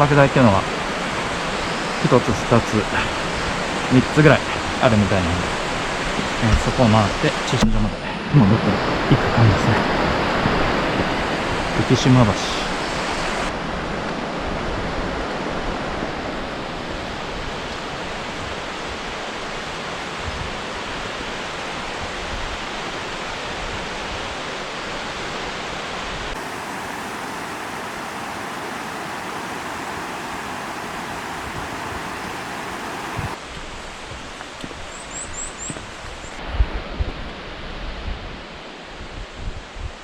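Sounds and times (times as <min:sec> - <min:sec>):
waterfall and river rapids roar: 0:26.4 - 0:33.4.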